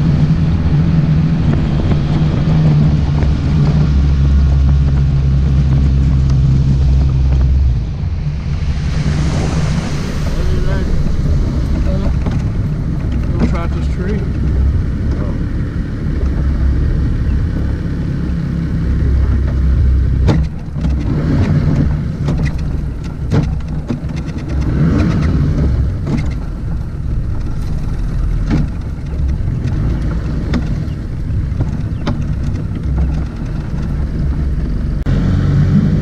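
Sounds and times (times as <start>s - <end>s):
motorboat engine droning: 0.0s - 36.0s
sharp knocks: 19.0s - 34.4s.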